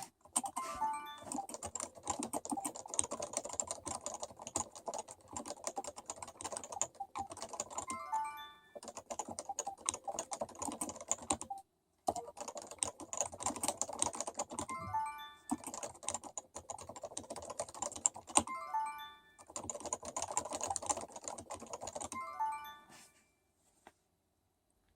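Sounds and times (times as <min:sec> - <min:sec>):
fast typing on keyboard: 0:00.2 - 0:18.6, 0:19.4 - 0:22.3
quick beeping tones: 0:00.4 - 0:01.6.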